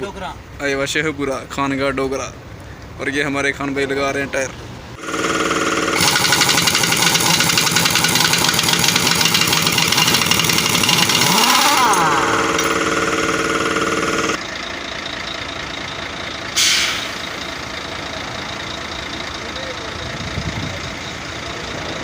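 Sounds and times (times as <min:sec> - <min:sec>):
engine idling: 0:05.0 - 0:22.0
air hissing: 0:16.6 - 0:17.4.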